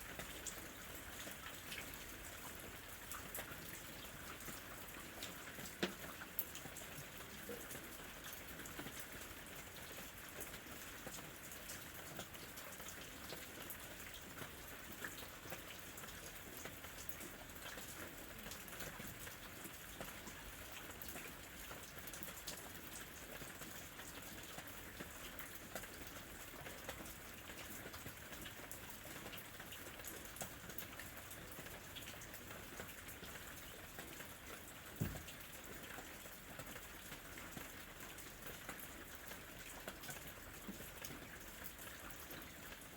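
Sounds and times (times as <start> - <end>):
rain falling: 0.0 - 42.9
raindrops ticking: 9.2 - 42.9.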